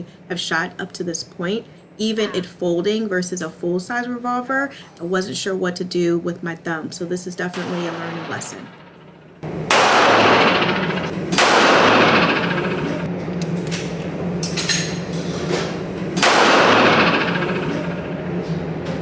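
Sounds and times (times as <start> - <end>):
revolver gunshots with ringing echo: 7.6 - 13.1, 16.2 - 18.4.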